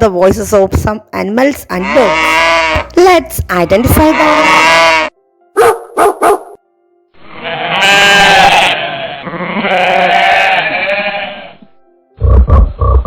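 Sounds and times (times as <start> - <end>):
sheep bleating: 1.7 - 3.0, 3.9 - 5.2, 7.2 - 11.7.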